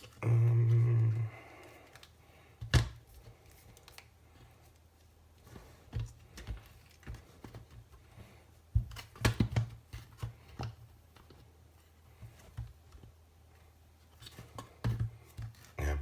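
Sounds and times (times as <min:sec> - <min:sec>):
low steady hum: 0:15.2 - 0:16.0.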